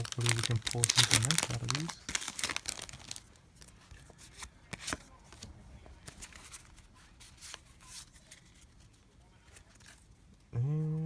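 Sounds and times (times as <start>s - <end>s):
trading cards sliding and rustling: 3.6s - 10.0s.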